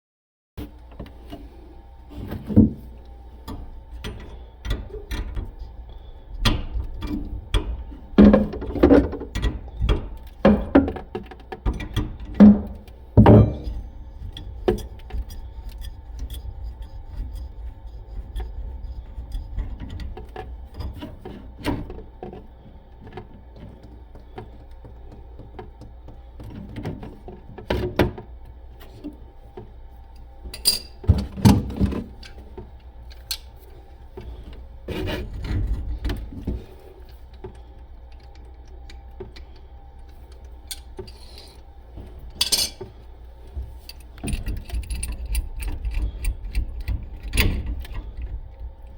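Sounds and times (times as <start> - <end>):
steady low hum: 0.6 - 48.9
louder knocks: 12.4 - 13.7
rubbing and scraping: 14.7 - 21.6, 34.2 - 36.9.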